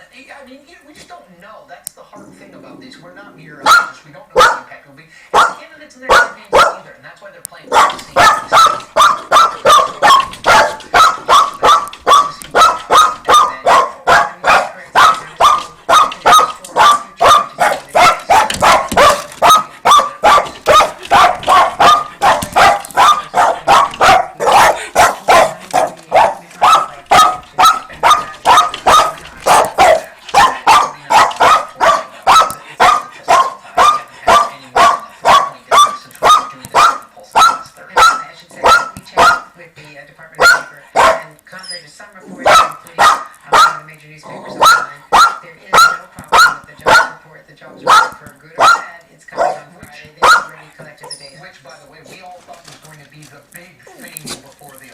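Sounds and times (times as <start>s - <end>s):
dog barking: 3.6s - 4.7s, 5.3s - 6.9s, 7.6s - 39.6s, 40.4s - 41.4s, 42.4s - 51.2s.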